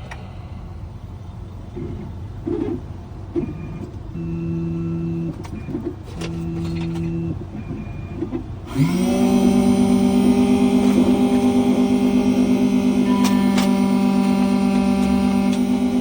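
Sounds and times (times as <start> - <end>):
motors humming: 0.0 - 16.0
cutter spindle whine: 8.7 - 16.0.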